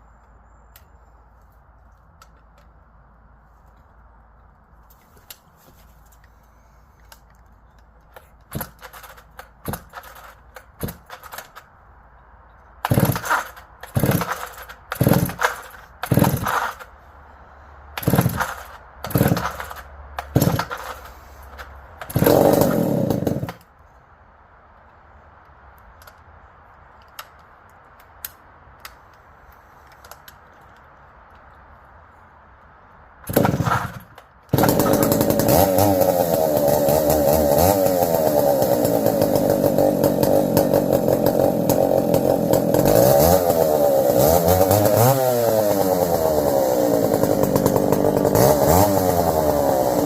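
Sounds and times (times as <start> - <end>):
chainsaw starter cord rips: 7.0 - 11.7, 12.8 - 17.0, 18.0 - 23.7, 33.2 - 50.0
chainsaw engine catching and dying: 8.0 - 11.7, 12.8 - 17.0, 18.0 - 23.7, 33.2 - 50.0.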